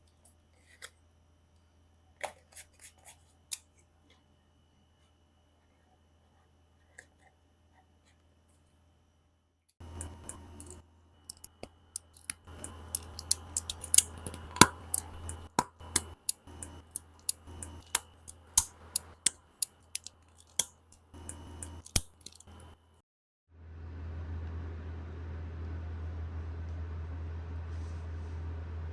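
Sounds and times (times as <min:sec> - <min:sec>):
plastic parts clicking and snipping: 0:09.8 - 0:22.7.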